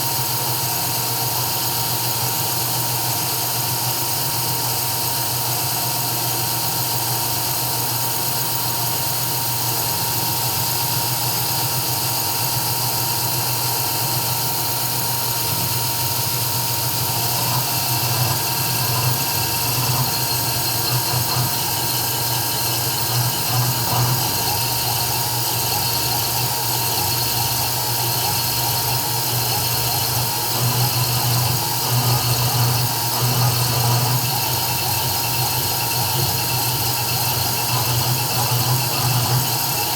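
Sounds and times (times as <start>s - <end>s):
high-pitched spindle whine: 14.5s - 39.9s.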